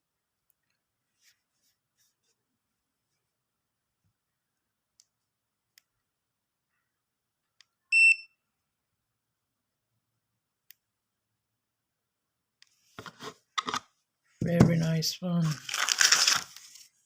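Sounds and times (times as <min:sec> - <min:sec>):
multimeter beep: 0:07.9 - 0:08.4.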